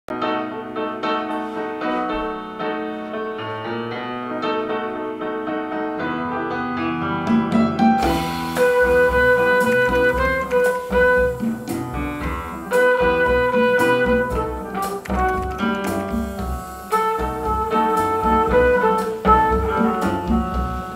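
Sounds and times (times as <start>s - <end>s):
deep bass and drum hits: 7.5s - 20.9s
held keyboard notes: 7.8s - 20.9s.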